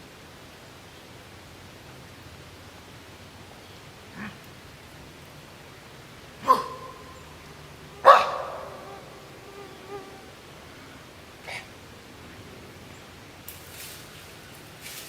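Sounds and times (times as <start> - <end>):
sharp bark-like calls: 4.1 - 4.4, 6.4 - 10.4.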